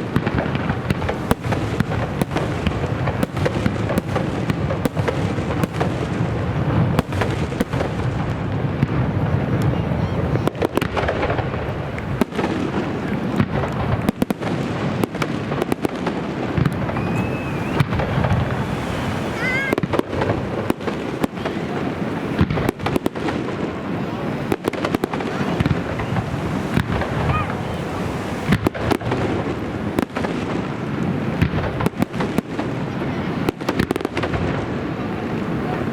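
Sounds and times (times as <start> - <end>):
fireworks bangs and crackles: 0.0 - 35.9
firework whistles: 15.0 - 23.1, 24.6 - 29.4.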